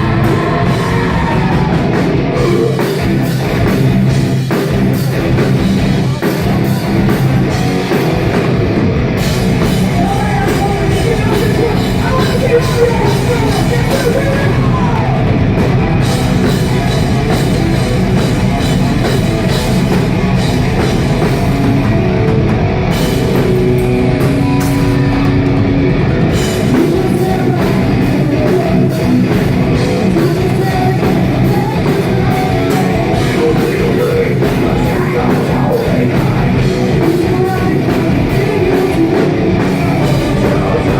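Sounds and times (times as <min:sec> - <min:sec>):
person singing: 0:00.0 - 0:03.1, 0:09.8 - 0:15.3, 0:26.5 - 0:40.9
distorted electric guitar: 0:00.0 - 0:40.9
drums: 0:00.0 - 0:40.9.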